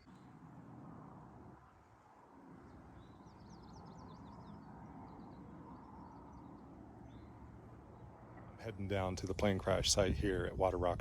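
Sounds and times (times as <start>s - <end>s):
low outdoor background hum: 0.0s - 11.0s
songbird chirping: 2.4s - 9.2s.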